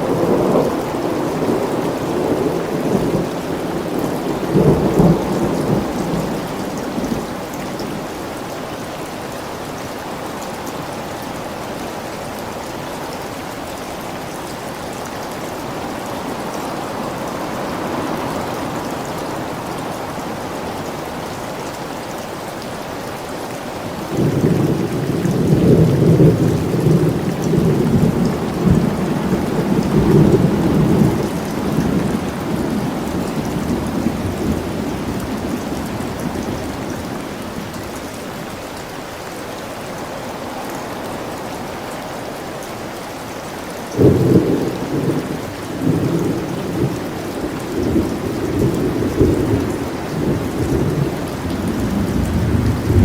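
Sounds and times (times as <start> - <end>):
steady rain falling: 0.0 - 53.0
thunder rumbling: 24.1 - 37.7, 44.0 - 53.0.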